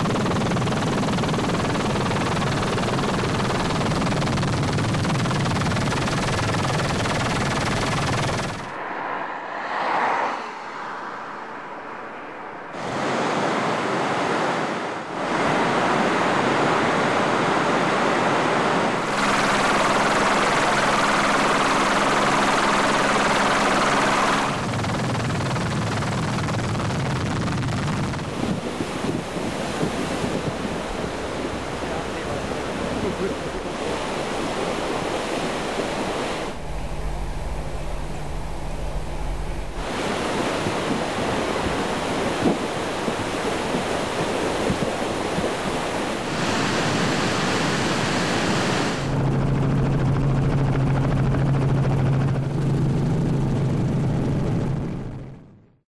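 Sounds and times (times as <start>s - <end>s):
steady low hum: 18.8s - 55.6s.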